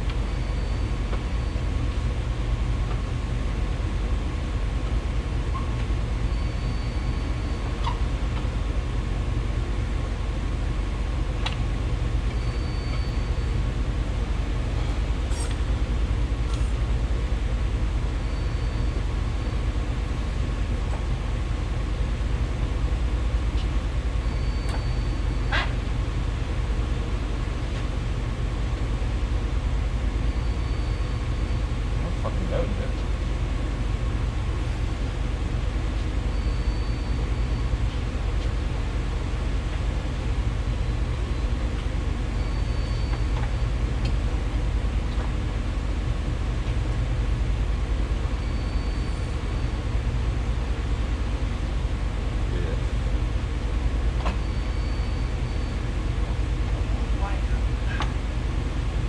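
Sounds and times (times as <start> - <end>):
low mechanical hum: 0.0 - 59.0.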